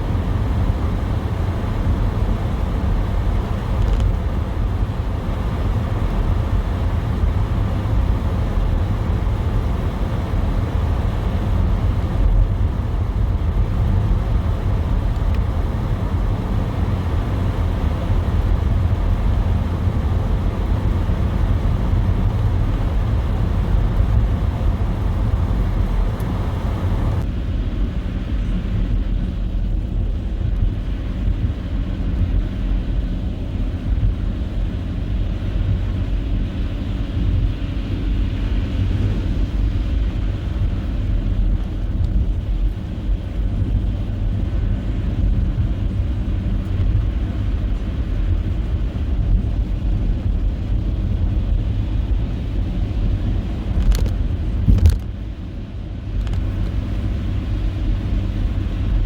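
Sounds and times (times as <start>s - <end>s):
engine and tyre rumble: 0.0s - 59.0s.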